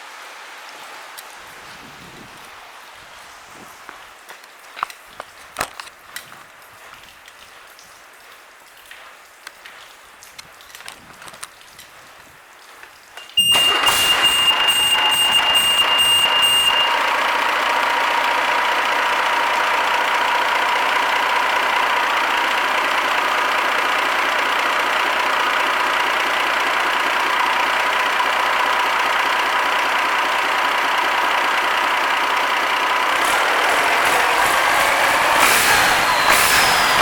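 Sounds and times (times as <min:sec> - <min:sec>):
diesel engine running: 0:13.2 - 0:37.0
steady whine: 0:32.5 - 0:37.0.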